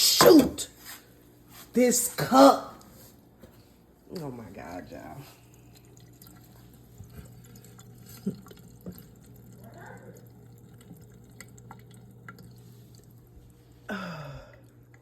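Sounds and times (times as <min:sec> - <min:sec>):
steady low hum: 0:02.8 - 0:15.0
water dripping: 0:05.4 - 0:15.0.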